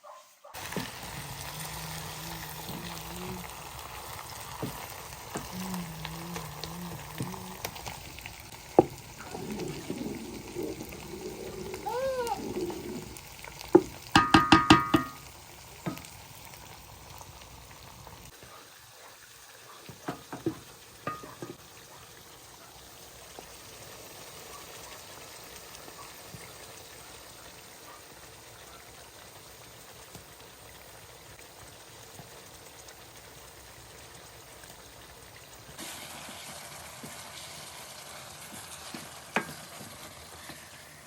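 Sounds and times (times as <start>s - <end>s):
food sizzling in a pot: 0.0s - 41.0s
metal utensil clinking on pot: 14.2s - 15.2s, 20.0s - 21.6s.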